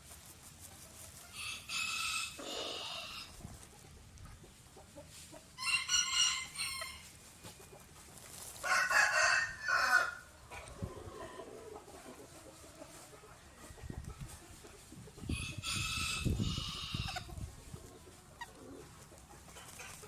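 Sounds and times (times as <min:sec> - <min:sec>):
rooster crowing: 0:05.6 - 0:07.0, 0:08.6 - 0:10.3.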